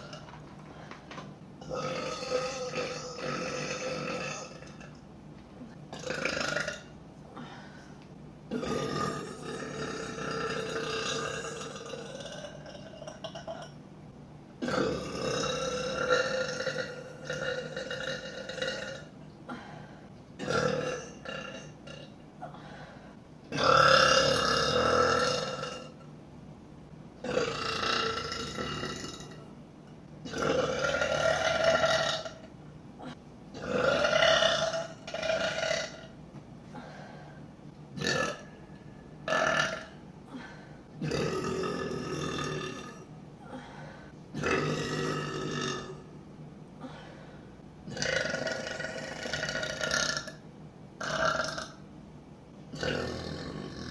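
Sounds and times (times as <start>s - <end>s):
woman burping: 39.3s - 43.7s, 44.4s - 46.0s, 47.9s - 50.4s.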